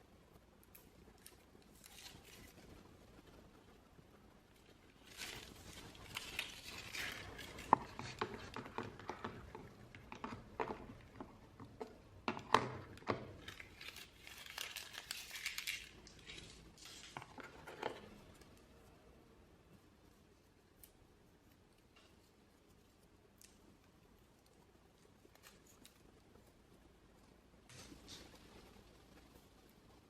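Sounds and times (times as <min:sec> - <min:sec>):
wrapping crinkling and rustling: 0:00.6 - 0:03.6, 0:04.5 - 0:18.8, 0:20.8 - 0:26.8.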